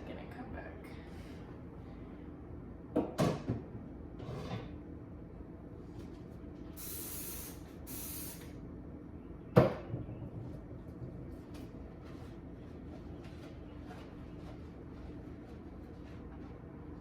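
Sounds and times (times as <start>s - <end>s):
short hissing sprays: 6.8s - 8.6s.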